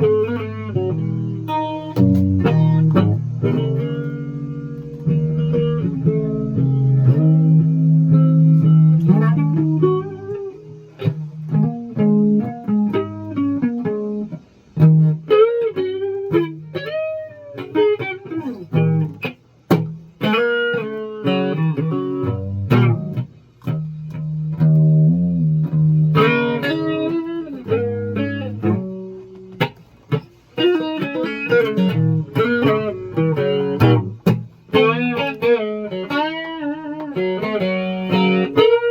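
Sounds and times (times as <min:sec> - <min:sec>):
guitar playing: 0:00.0 - 0:38.9.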